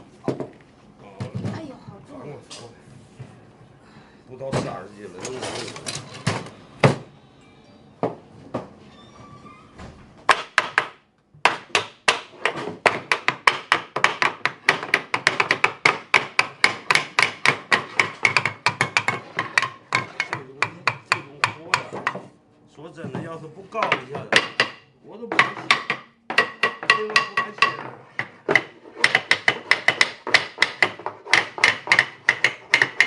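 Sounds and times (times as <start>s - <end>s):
hammer striking wood: 10.3s - 22.3s, 23.8s - 33.0s.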